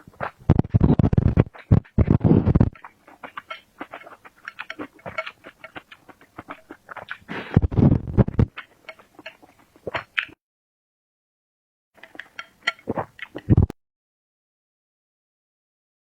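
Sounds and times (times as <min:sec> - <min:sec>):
deep chewing: 0:00.0 - 0:10.4, 0:12.0 - 0:13.8
wet chewing clicks: 0:00.1 - 0:10.4, 0:12.0 - 0:13.8.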